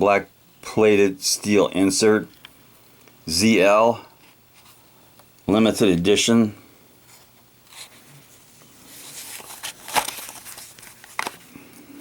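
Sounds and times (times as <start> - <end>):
soft rustling of packaging: 4.1 - 6.1, 7.0 - 12.0.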